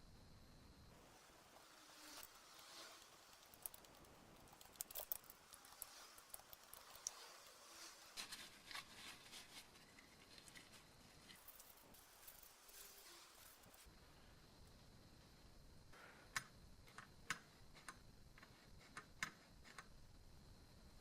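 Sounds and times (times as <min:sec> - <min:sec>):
faint clicks and light scraping: 0:02.2 - 0:07.4.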